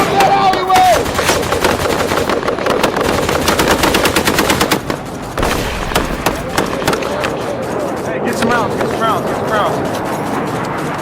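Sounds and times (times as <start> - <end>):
toy blasters firing: 0.0 - 8.0.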